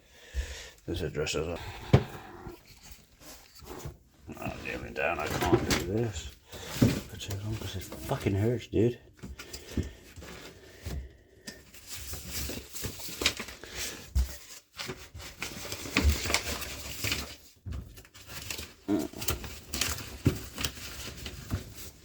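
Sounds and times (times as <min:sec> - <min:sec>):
bags rustling: 0:01.7 - 0:08.6.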